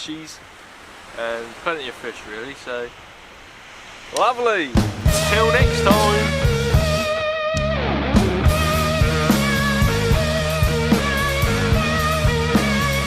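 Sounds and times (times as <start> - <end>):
rock music with guitar and drums: 4.8 - 13.0.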